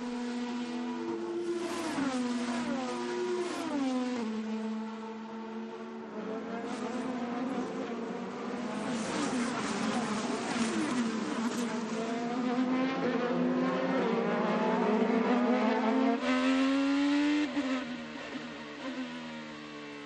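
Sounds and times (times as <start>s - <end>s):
racing engine revving: 6.6s - 18.3s.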